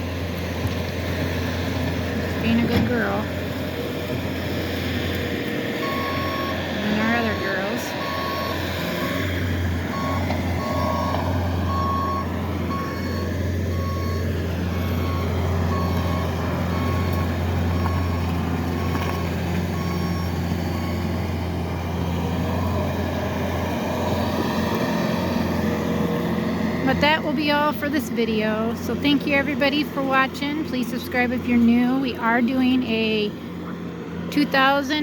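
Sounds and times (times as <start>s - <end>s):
vehicle engine running: 0.0s - 35.0s
reversing alarm beeping: 5.8s - 9.3s, 9.9s - 21.4s, 26.7s - 33.3s.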